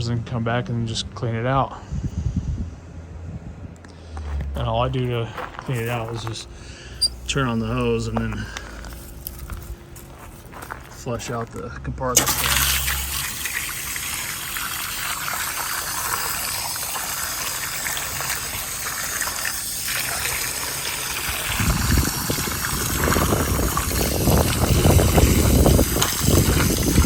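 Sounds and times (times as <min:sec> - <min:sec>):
garden hose spraying water: 0:05.1 - 0:06.4, 0:07.0 - 0:11.2, 0:12.2 - 0:27.0.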